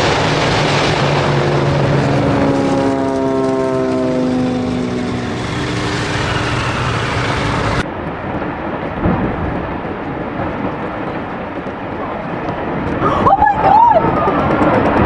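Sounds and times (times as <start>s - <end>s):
propeller engines droning: 0.0s - 15.0s
rushing noise: 0.0s - 15.0s.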